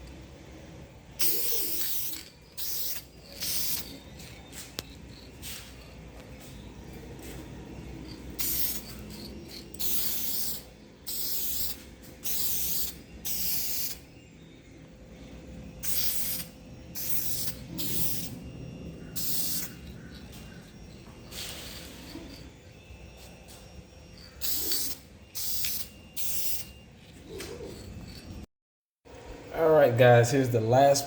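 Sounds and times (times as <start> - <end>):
spray paint hissing: 1.2 - 5.9, 8.1 - 14.1, 15.8 - 18.4, 19.2 - 19.8, 24.4 - 26.8.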